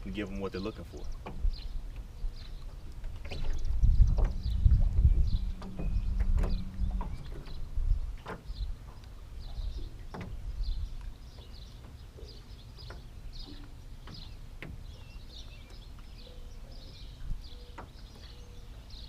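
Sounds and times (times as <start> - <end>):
small birds chirping: 0.0 - 19.0
wind rumble on microphone: 1.0 - 19.0.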